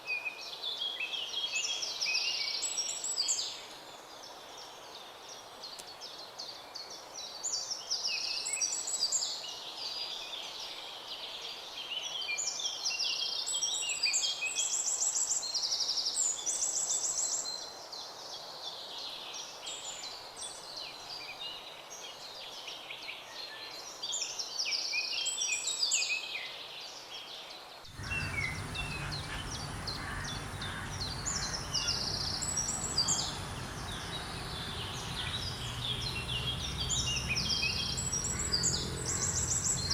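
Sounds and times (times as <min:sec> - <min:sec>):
low rumble: 0:27.9 - 0:39.9
songbirds singing and chirping: 0:27.9 - 0:39.9
steady high-pitched hum: 0:27.9 - 0:39.9.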